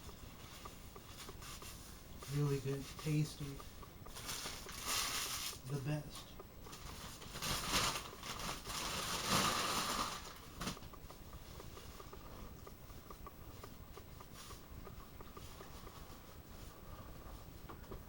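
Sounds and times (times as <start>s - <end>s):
wrapping crumpled and rustled: 4.1s - 5.7s, 6.7s - 10.9s.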